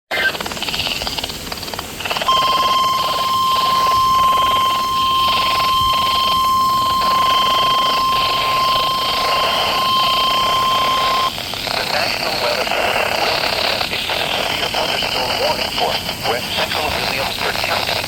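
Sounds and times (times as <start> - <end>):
radio noise hiss: 0.1 - 18.0
steady high warning beep: 2.2 - 11.4.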